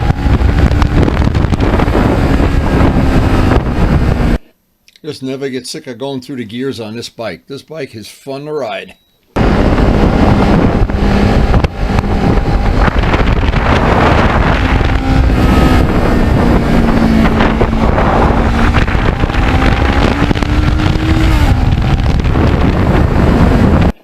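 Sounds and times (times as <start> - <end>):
motorcycle engine running: 0.0 - 4.4, 9.4 - 24.0
wind buffeting microphone: 0.0 - 4.4, 9.4 - 24.0.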